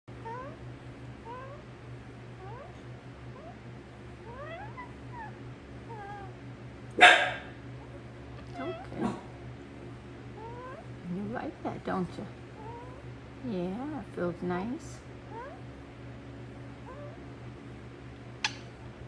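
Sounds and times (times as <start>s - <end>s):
parrot squawking: 4.2s - 6.3s, 7.0s - 7.6s, 10.4s - 10.9s, 15.3s - 15.6s, 18.4s - 18.7s
parrot chirping and squeaking: 18.4s - 18.7s.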